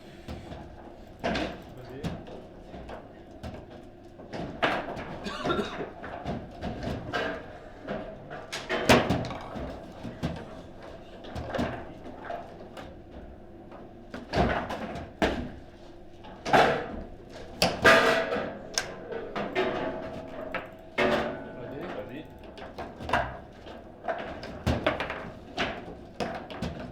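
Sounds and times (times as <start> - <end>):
table football ball knocks: 9.0 - 9.8.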